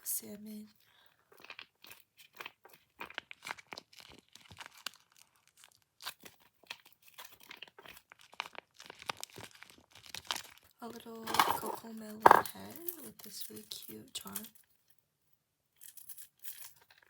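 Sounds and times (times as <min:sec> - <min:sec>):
plastic packaging crackling: 0:02.9 - 0:13.1.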